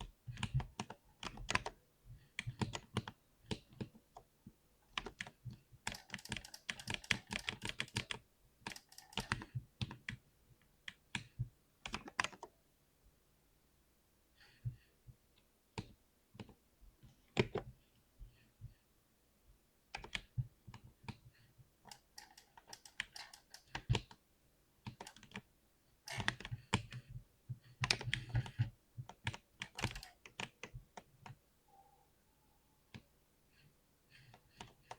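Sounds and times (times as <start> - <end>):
keyboard key clicks: 5.9 - 9.5, 21.9 - 24.0, 24.9 - 25.4, 29.2 - 31.1.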